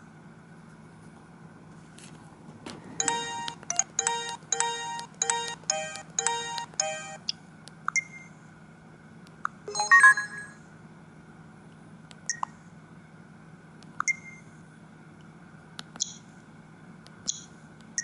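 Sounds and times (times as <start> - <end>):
phone ringtone: 3.0 - 7.3, 9.7 - 10.6
short high beeps: 9.7 - 10.6.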